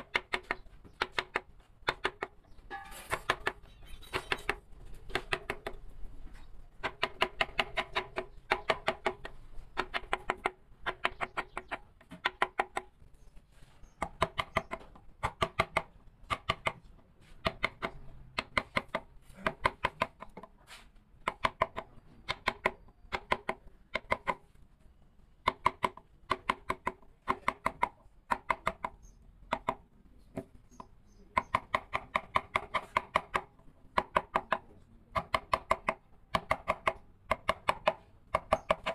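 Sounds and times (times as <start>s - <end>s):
mallet striking chisel into wood: 3.1s - 5.8s, 6.8s - 12.9s, 14.0s - 16.8s, 17.4s - 20.5s, 21.2s - 24.4s, 25.4s - 28.9s, 30.4s - 38.9s.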